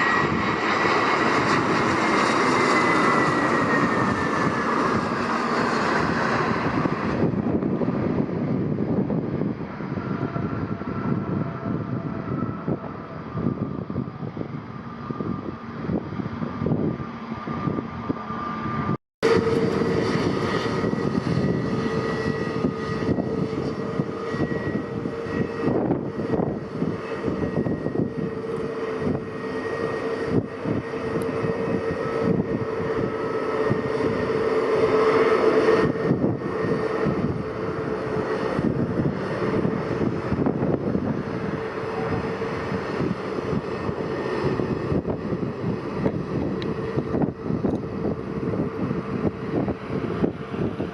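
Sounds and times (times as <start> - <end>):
airliner engines whining and rumbling: 0.0 - 50.9.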